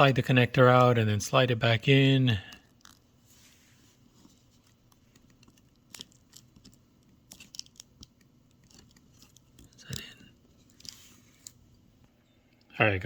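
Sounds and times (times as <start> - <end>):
ribbon cable clicks and scrapes: 2.4 - 11.8.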